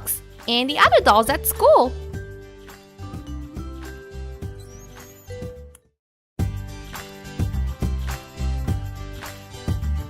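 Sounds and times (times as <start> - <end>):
high squeaky chirp: 4.4 - 5.7
music with steady beat: 6.4 - 10.0.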